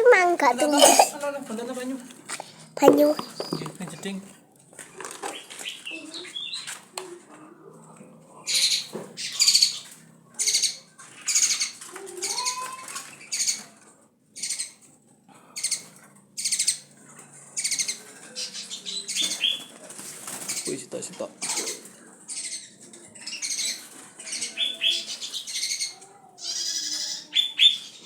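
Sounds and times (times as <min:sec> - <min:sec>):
songbird harsh high-pitched calls: 0:24.4 - 0:28.0.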